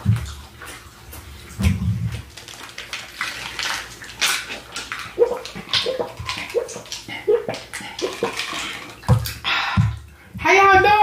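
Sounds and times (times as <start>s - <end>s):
chewing and wet mouth sounds: 0.0s - 10.1s.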